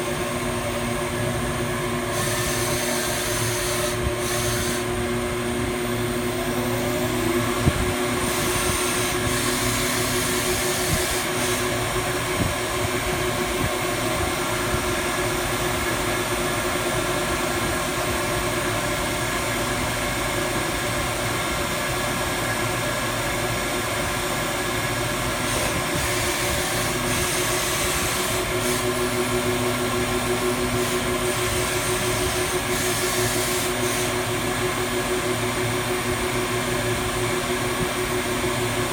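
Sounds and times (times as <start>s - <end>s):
grinding machine hiss and hum: 0.0s - 38.9s.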